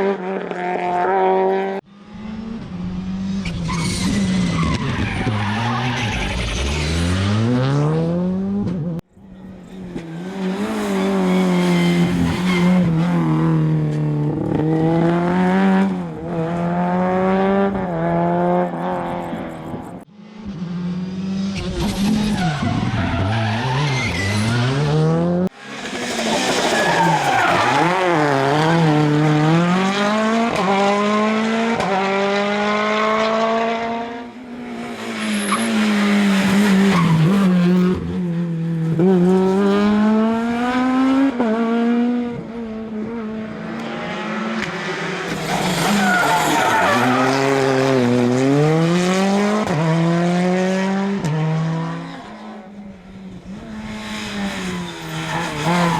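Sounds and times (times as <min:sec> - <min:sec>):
rally car engines revving: 0:00.0 - 0:55.9
tyre squeal: 0:03.4 - 0:06.9, 0:09.3 - 0:13.3, 0:21.6 - 0:24.8, 0:25.6 - 0:28.3, 0:34.9 - 0:37.5, 0:45.3 - 0:47.9.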